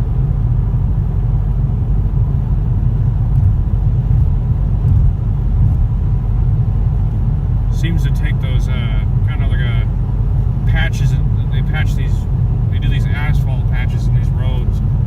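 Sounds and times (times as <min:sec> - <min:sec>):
road rumble and tyre noise: 0:00.0 - 0:15.0.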